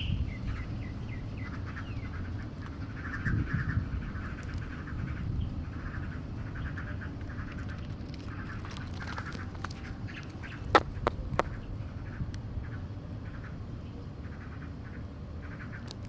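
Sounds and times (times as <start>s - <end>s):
nestlings chirping: 8.2s - 11.6s.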